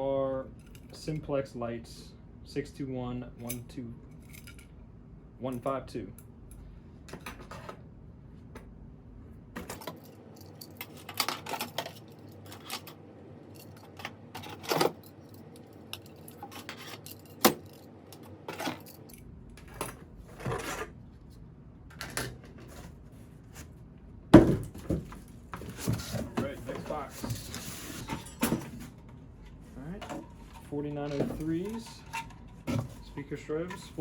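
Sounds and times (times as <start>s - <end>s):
parts clattering in a box: 9.6s - 13.0s, 13.6s - 20.9s, 24.4s - 29.0s, 30.0s - 34.0s.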